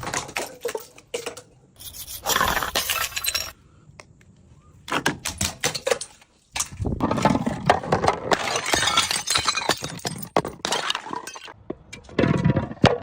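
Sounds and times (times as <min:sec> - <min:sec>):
glass shards clinking: 0:01.8 - 0:03.6
glass bottles smashing: 0:02.4 - 0:03.6, 0:07.1 - 0:11.6.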